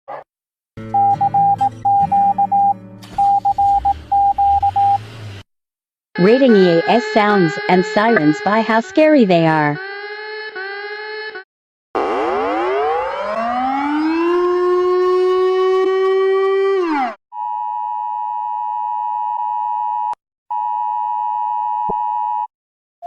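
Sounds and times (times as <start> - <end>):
two-tone alert tone: 1.0 - 5.0
emergency siren wailing: 3.0 - 5.3, 6.2 - 11.4, 12.0 - 17.2.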